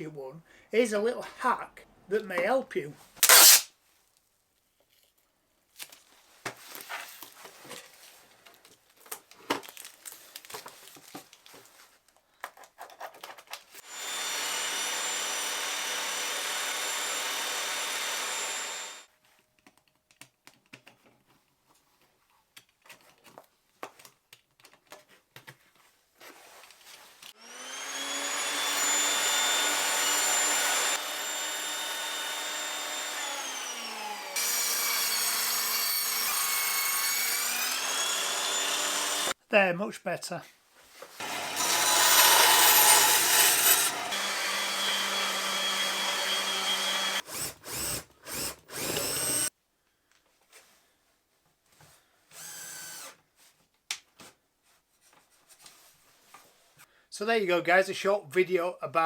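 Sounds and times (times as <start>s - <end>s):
table saw motor running: 13.9s - 19.0s, 27.4s - 39.3s, 41.2s - 47.9s, 48.7s - 49.5s
small clicks and handling knocks: 19.6s - 21.4s.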